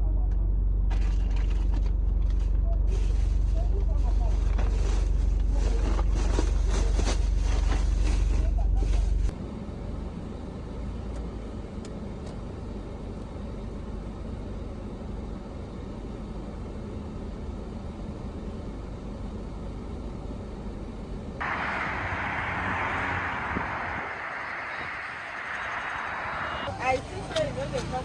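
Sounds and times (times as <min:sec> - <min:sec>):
car engine rumble: 0:00.0 - 0:28.0
road noise inside car: 0:00.0 - 0:28.0
loud even hiss: 0:21.4 - 0:26.6.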